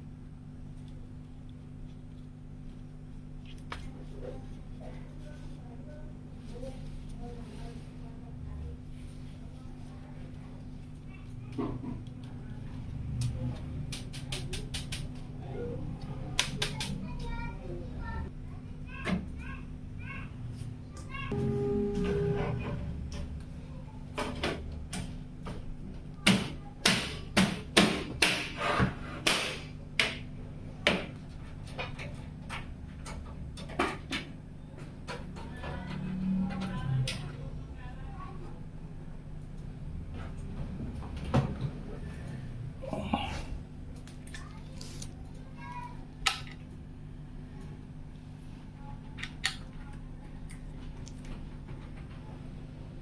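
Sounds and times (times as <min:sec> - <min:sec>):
faint steady hum: 0:15.1 - 0:53.0.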